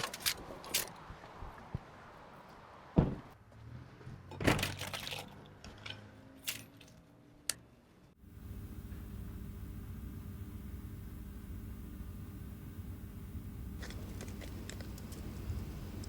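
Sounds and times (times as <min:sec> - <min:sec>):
low hum: 0:08.2 - 0:16.0.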